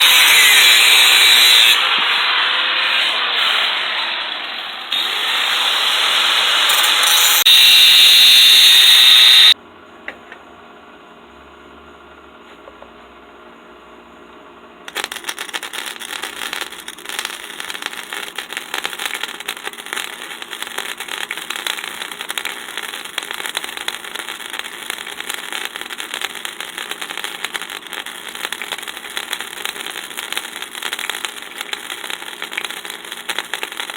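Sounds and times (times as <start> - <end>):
power tool on steel: 0.0 - 9.6
steady crackling: 14.9 - 33.9.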